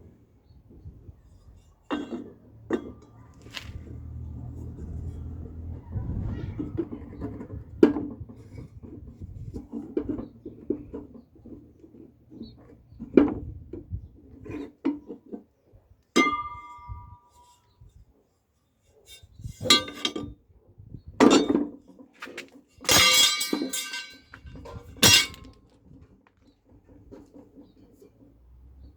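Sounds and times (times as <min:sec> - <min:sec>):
rattling metal clatter: 0:21.3 - 0:25.6
metal parts clinking: 0:22.9 - 0:24.4, 0:25.0 - 0:25.6
ringing metal strike: 0:25.0 - 0:25.5.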